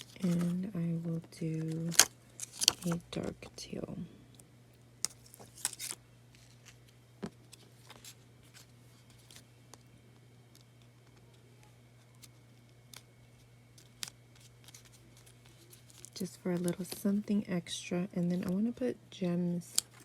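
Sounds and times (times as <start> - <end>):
paper clicks and rustles: 0.0 - 0.6, 1.5 - 3.0, 5.0 - 9.9, 10.5 - 17.0
steady low hum: 0.0 - 20.0.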